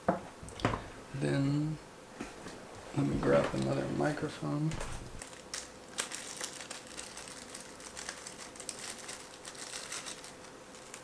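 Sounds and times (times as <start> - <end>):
plastic packaging crinkling: 5.2 - 11.0.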